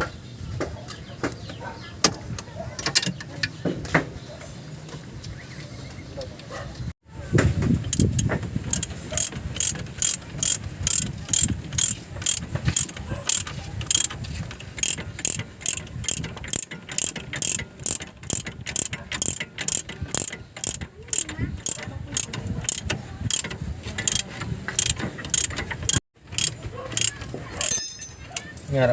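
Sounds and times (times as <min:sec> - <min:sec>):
ratchet wrench clicking: 0:07.8 - 0:14.2, 0:14.8 - 0:28.5.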